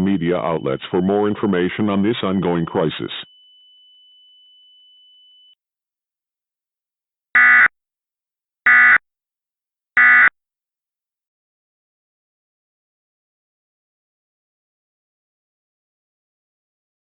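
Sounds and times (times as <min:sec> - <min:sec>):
faint steady high tone: 0:00.0 - 0:05.6.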